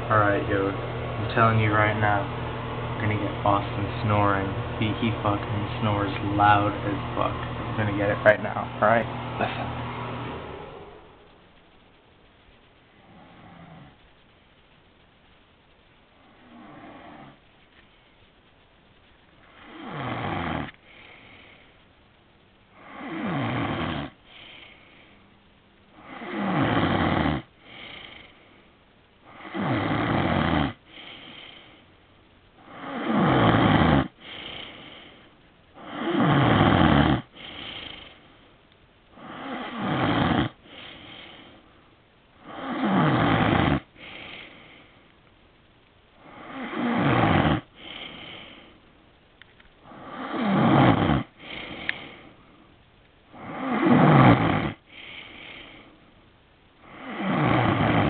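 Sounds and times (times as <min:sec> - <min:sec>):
man snoring loudly: 0:00.0 - 0:09.8, 0:16.4 - 0:17.4, 0:19.5 - 0:21.5, 0:22.8 - 0:24.8, 0:26.0 - 0:28.4, 0:29.3 - 0:31.7, 0:32.6 - 0:35.2, 0:35.8 - 0:38.2, 0:39.2 - 0:41.6, 0:42.4 - 0:44.8, 0:46.2 - 0:48.8, 0:49.8 - 0:52.3, 0:53.3 - 0:55.8, 0:56.8 - 0:58.0.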